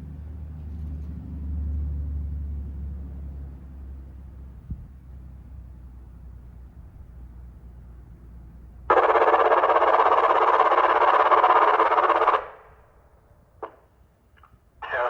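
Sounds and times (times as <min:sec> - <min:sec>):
electronic siren steady tone: 0:08.9 - 0:12.5.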